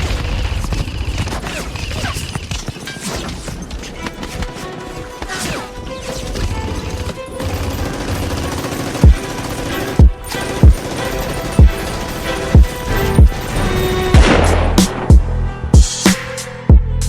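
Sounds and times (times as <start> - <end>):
background music with low beat: 9.0 - 11.0, 11.6 - 17.0
airsoft gun fire: 14.2 - 15.1.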